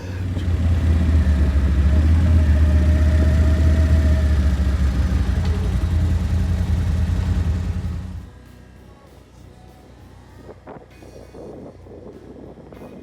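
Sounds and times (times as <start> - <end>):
car engine and road rumble: 0.0 - 8.4.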